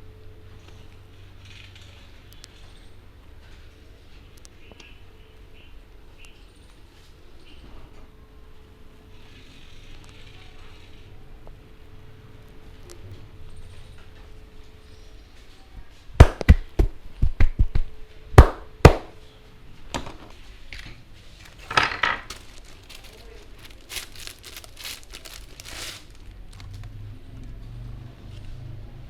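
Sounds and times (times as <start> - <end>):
hands slapping a head: 16.2 - 19.1.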